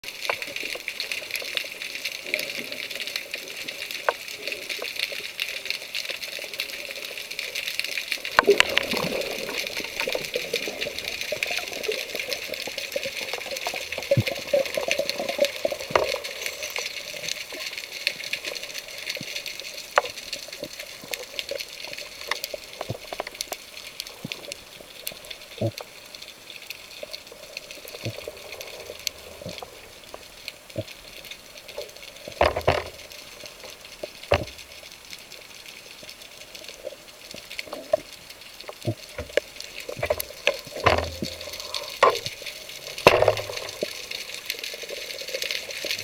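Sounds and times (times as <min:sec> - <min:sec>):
rushing water: 0:00.0 - 0:46.0
underwater crackle of clicks: 0:00.0 - 0:46.0
underwater knocks: 0:34.3 - 0:34.6.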